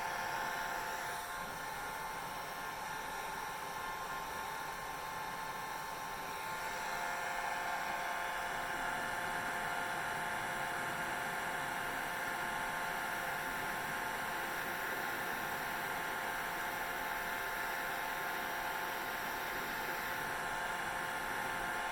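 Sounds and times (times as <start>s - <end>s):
hair dryer running: 0.0s - 21.9s.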